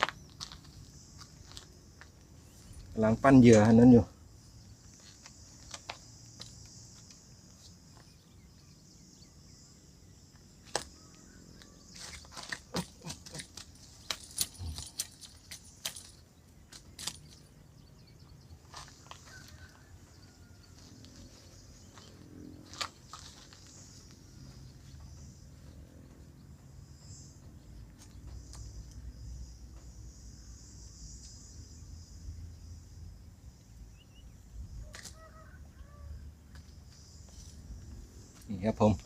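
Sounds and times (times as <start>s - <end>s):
insects chorus: 0.0s - 39.0s.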